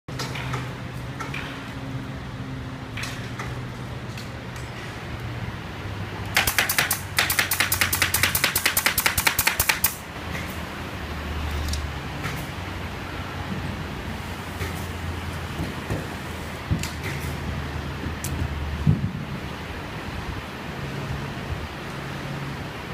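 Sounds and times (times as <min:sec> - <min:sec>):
fast run of sharp clacks: 0:06.3 - 0:10.0.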